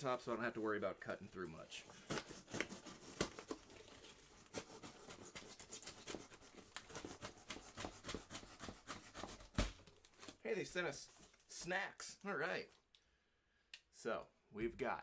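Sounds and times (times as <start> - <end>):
cardboard box being unpacked: 2.0 - 10.4.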